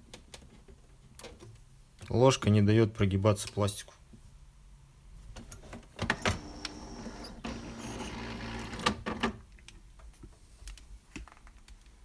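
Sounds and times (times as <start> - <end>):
coffee machine motor running: 6.3 - 8.8.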